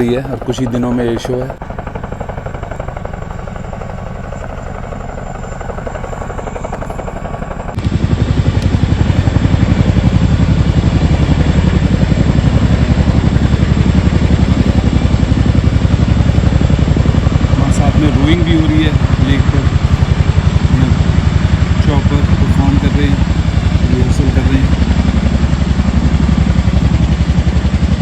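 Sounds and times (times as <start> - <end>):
helicopter rotor beating: 0.0 - 28.0.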